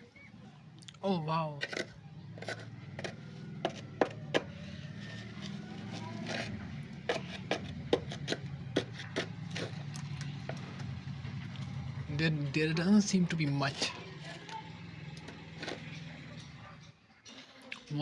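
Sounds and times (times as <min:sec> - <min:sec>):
hand tool cracking and scraping: 0:01.6 - 0:10.9, 0:13.7 - 0:16.5.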